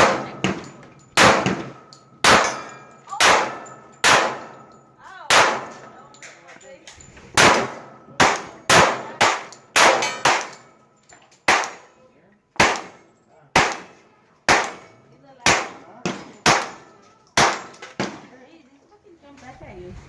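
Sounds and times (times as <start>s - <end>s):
echoing gunshots: 0.0s - 4.6s, 5.3s - 6.0s, 7.4s - 10.7s, 11.5s - 11.8s, 12.6s - 13.0s, 13.6s - 16.8s, 17.4s - 18.2s.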